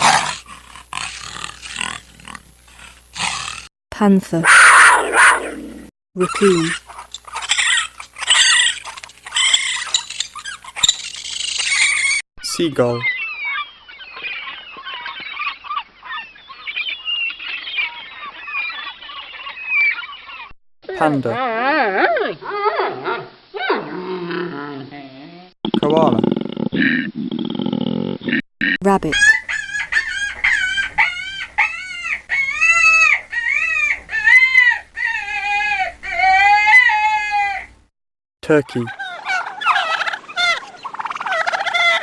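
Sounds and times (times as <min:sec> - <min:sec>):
seagulls calling: 0:06.2 - 0:12.2, 0:12.8 - 0:20.6, 0:29.1 - 0:37.7, 0:38.7 - 0:42.0.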